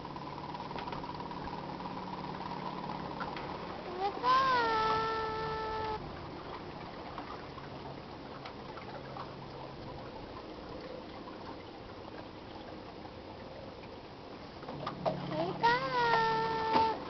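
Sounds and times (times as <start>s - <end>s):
water trickling and lapping: 0.0s - 17.0s.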